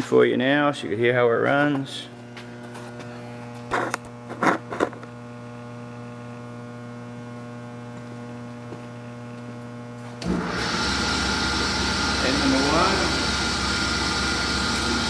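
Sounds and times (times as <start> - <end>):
drill press electrical hum: 1.6 - 15.0
drill press motor running: 10.1 - 15.0.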